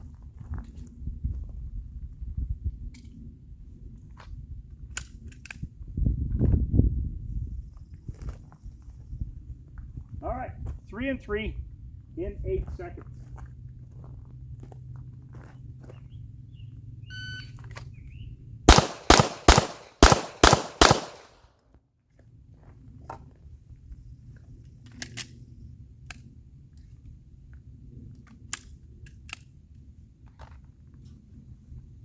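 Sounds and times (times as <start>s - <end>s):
handgun shots: 18.7s - 21.4s.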